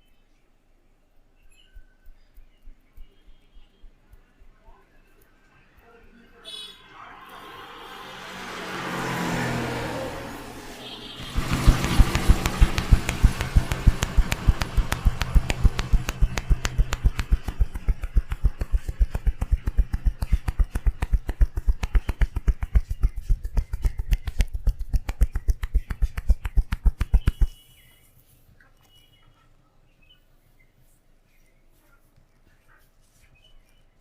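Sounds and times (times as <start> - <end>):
hands tapping rapidly on head: 11.2 - 27.6.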